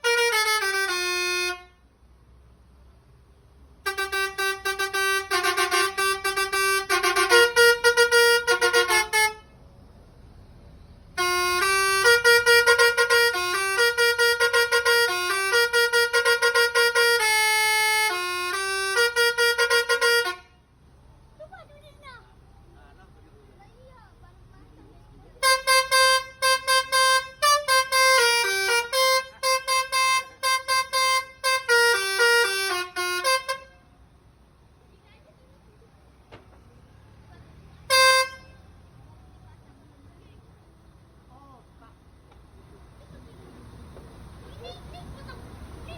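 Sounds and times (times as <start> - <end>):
multi-tone bus horn melodies: 0.0 - 2.0, 3.8 - 9.6, 11.1 - 20.8, 25.4 - 34.4, 37.8 - 39.0.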